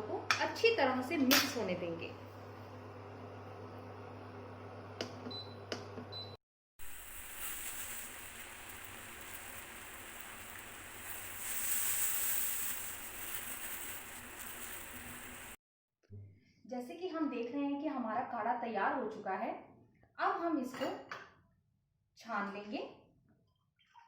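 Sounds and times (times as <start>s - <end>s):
water simmering in a pan: 6.8s - 15.6s.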